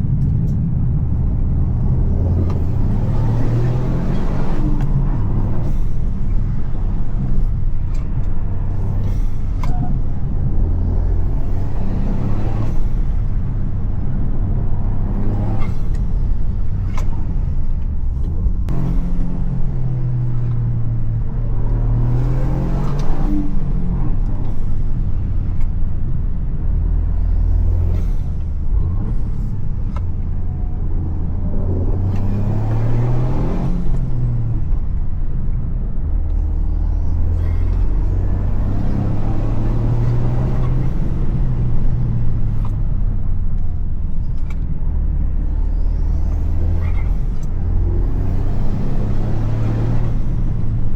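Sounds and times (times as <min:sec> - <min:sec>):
car engine revving hard: 0:02.0 - 0:06.0, 0:10.7 - 0:13.1, 0:21.5 - 0:24.6, 0:31.3 - 0:34.3, 0:36.8 - 0:42.7, 0:45.3 - 0:50.9.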